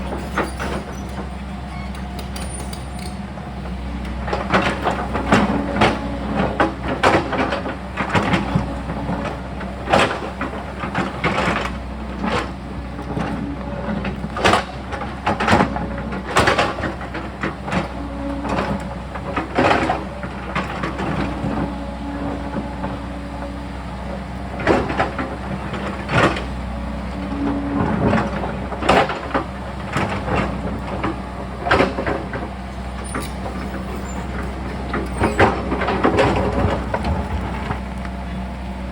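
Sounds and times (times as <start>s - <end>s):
excavator diesel engine running: 0.0s - 38.9s
bucket scraping and knocking rock: 33.2s - 38.0s.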